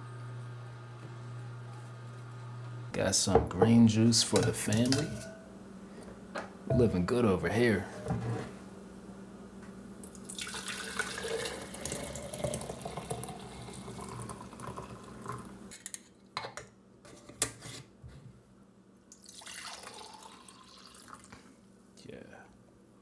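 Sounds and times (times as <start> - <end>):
sharp knocks: 6.7 - 7.1
juice pouring into a glass: 10.0 - 15.7, 19.1 - 21.5.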